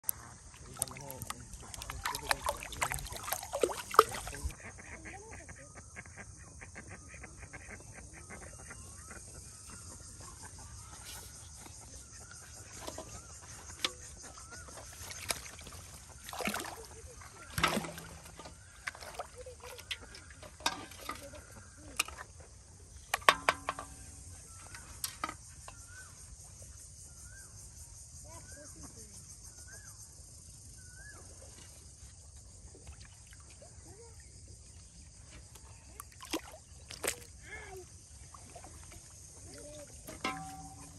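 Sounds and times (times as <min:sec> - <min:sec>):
small drips: 0:00.0 - 0:04.6, 0:12.4 - 0:22.4, 0:35.5 - 0:40.9
water sloshing: 0:00.0 - 0:04.6, 0:09.5 - 0:26.3, 0:32.6 - 0:40.9
insects chirping: 0:00.0 - 0:40.9.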